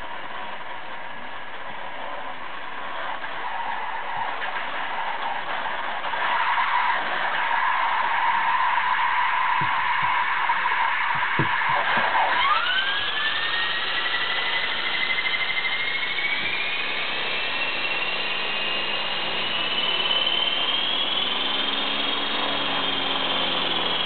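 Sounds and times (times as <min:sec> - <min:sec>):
electric motor whine rising: 0:08.0 - 0:24.0.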